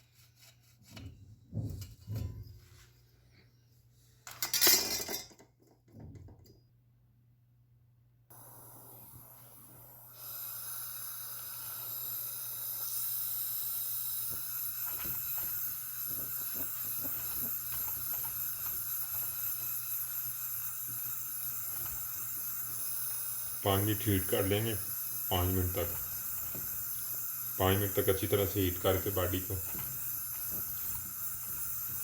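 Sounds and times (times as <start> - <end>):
gas burner flame hissing: 8.3 - 32.0.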